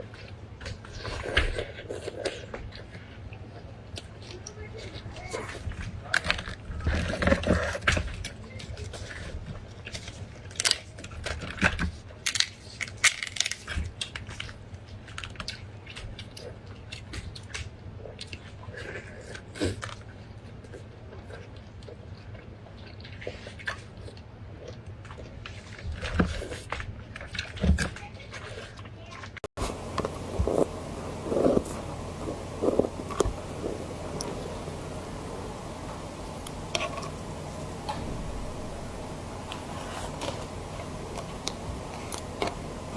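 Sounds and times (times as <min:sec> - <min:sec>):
chewing and biting meat: 0:29.6 - 0:42.9
noisy background: 0:29.6 - 0:42.9.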